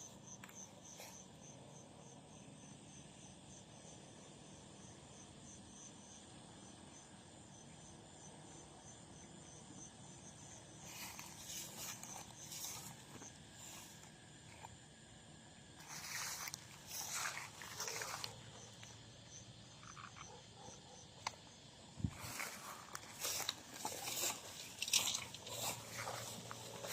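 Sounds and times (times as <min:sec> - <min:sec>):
insect chirping: 0:00.0 - 0:26.9
rustling: 0:22.1 - 0:26.9.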